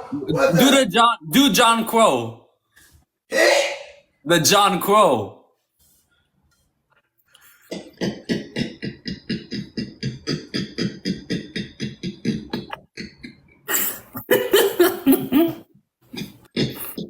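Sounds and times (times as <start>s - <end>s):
loud vocal burst: 0.0s - 1.3s.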